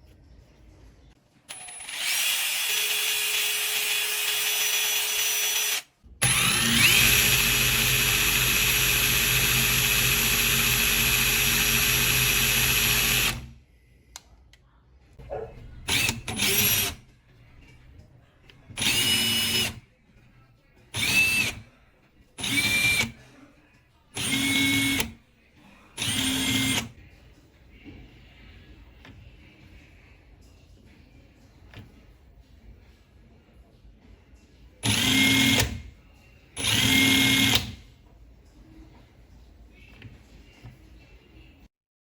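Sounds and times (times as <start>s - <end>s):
impact driver motor whine: 1.5s - 13.4s, 18.8s - 19.8s, 22.4s - 23.2s, 24.2s - 25.2s, 34.8s - 35.8s, 36.6s - 37.8s.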